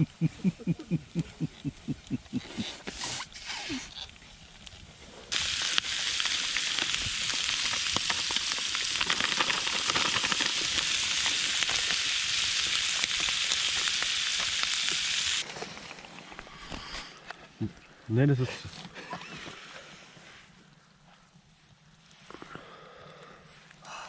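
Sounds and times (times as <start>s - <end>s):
campfire sizzling: 0.0s - 17.3s, 18.4s - 24.0s
fire crackles and pops: 0.0s - 17.4s.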